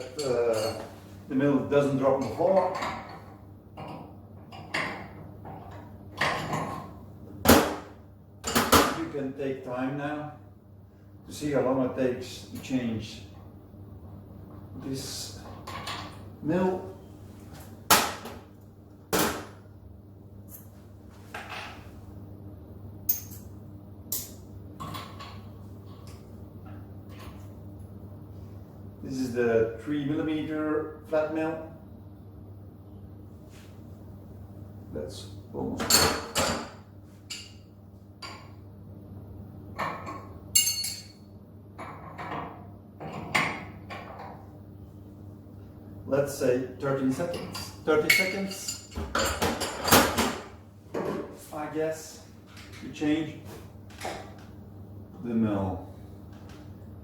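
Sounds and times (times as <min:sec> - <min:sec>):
metal tools clanking: 0:00.0 - 0:01.0, 0:40.6 - 0:41.2, 0:47.3 - 0:50.2
steady low hum: 0:00.0 - 0:57.0.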